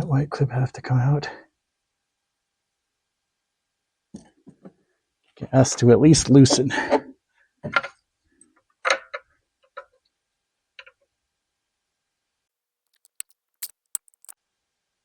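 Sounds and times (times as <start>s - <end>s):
tools clicking on plastic clip: 13.9s - 14.4s.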